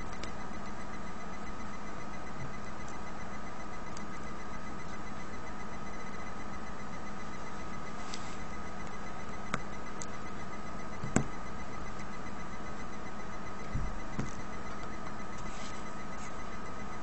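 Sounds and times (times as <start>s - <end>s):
steady electrical hum: 0.0s - 17.0s
small clicks and taps: 8.8s - 10.2s.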